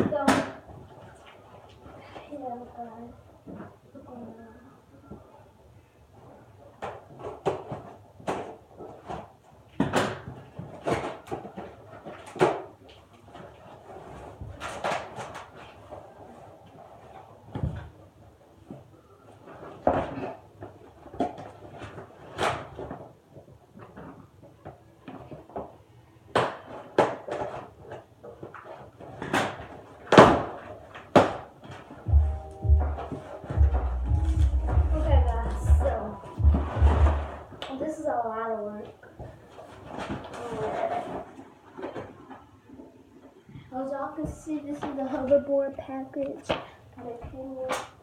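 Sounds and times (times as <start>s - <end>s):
knocks and thumps: 32.1s - 37.4s
thuds: 32.1s - 37.4s.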